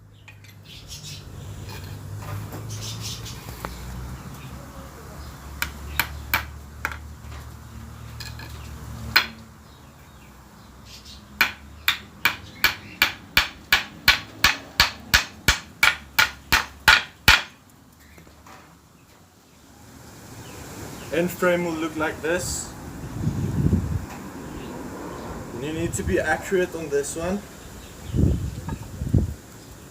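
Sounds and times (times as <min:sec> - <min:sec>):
hammer driving nails into wood: 0:09.2 - 0:09.4, 0:11.4 - 0:17.6.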